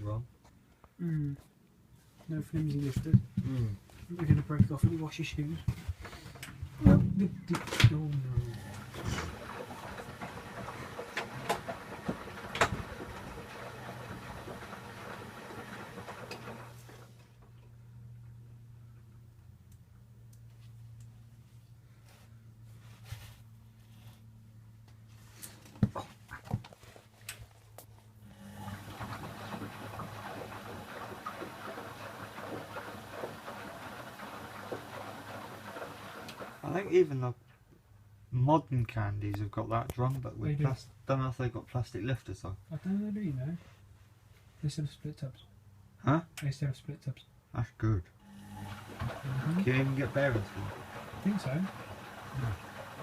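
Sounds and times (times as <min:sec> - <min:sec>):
low steady hum: 0:00.0 - 0:33.3
washing machine running: 0:06.5 - 0:17.4, 0:28.2 - 0:36.9, 0:48.2 - 0:53.0
drum churning noise: 0:48.6 - 0:53.0.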